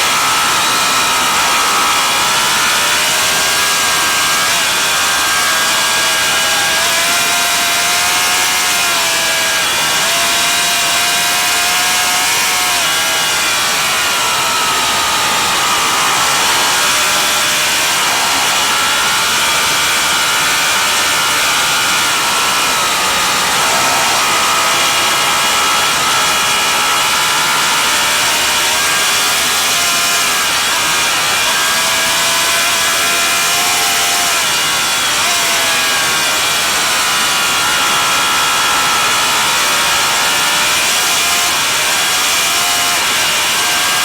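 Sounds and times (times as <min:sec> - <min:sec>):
racing motorcycle engine revving: 0:06.2 - 0:30.1
steady rushing hiss: 0:13.6 - 0:27.7.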